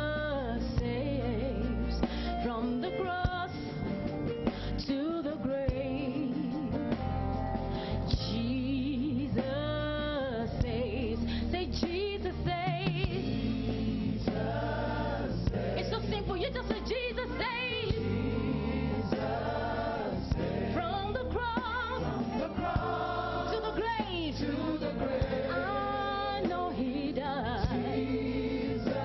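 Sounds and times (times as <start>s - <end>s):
gospel singers with band: 0.0s - 29.0s.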